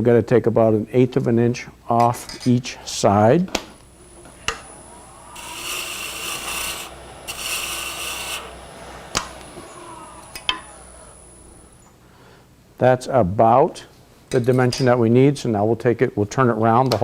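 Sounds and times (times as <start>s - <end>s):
gouge cutting wood on lathe: 3.8s - 11.8s.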